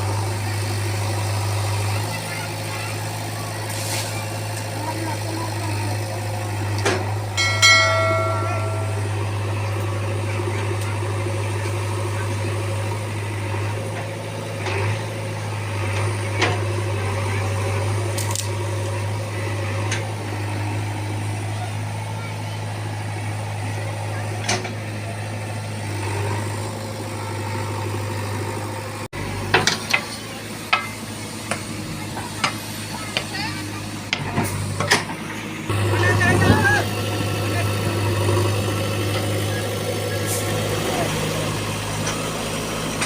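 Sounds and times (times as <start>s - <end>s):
backhoe diesel engine running: 0.0s - 43.0s
sharp knocks and clanks: 6.8s - 9.4s.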